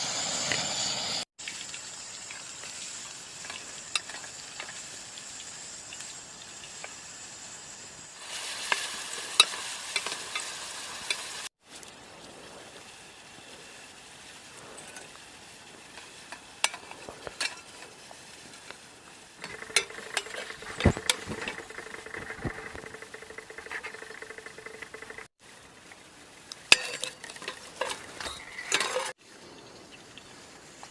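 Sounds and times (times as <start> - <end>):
food sizzling in a pan: 0.0 - 22.2
utensil clicking and scraping: 19.4 - 25.3.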